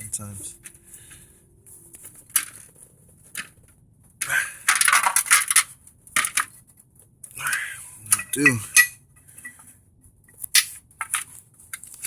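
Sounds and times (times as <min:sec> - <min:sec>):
metal caliper parts clinking: 0:08.0 - 0:09.6.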